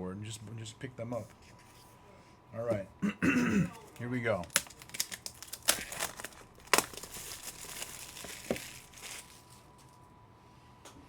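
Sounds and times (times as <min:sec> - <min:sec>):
plastic wrapper crinkling and tearing: 0:03.7 - 0:09.8.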